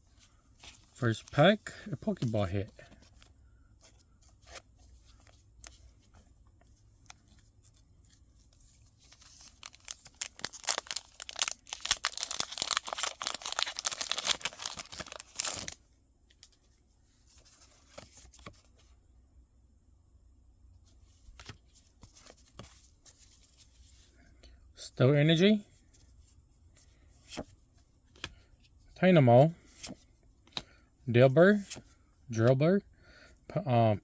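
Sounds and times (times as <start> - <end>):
foil wrapper tearing and crinkling: 9.6 - 15.8.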